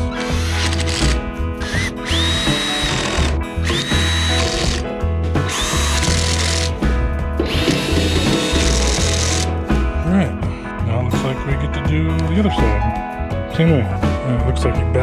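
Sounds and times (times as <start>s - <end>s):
cordless drill whining: 0.0s - 4.8s, 5.4s - 6.8s, 7.4s - 9.5s.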